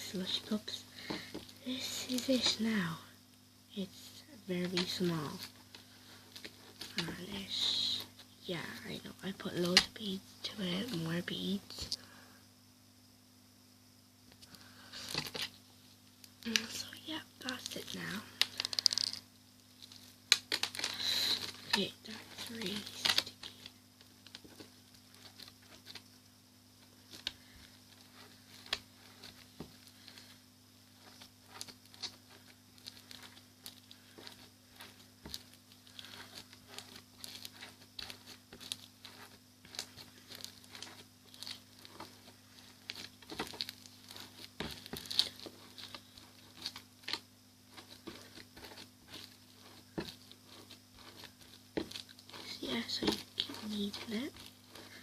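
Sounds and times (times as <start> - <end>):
hands squishing beaded slime: 27.9 - 55.0.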